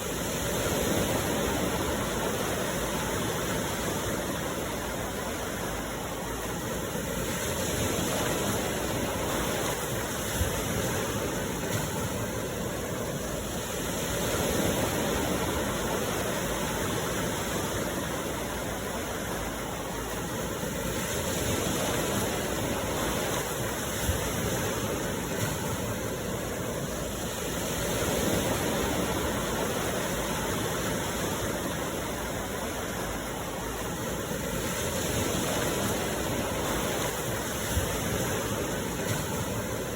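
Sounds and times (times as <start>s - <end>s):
sea waves washing ashore: 0.0s - 39.9s.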